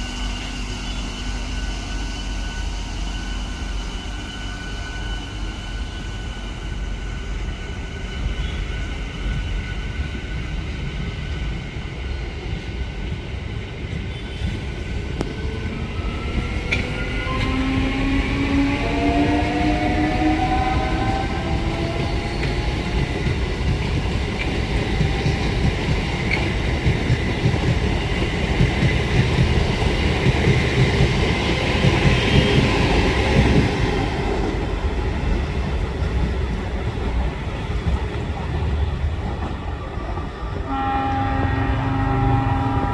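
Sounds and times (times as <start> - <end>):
train wheels rumbling on rails: 0.0 - 42.9
train horn chord: 18.7 - 21.8, 40.6 - 42.9.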